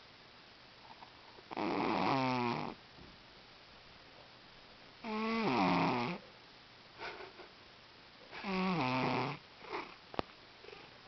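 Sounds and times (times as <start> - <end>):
cat snoring: 1.5 - 2.8, 5.0 - 6.2, 8.4 - 10.0, 10.6 - 10.9
cat snuffling: 8.4 - 10.0, 10.6 - 11.0.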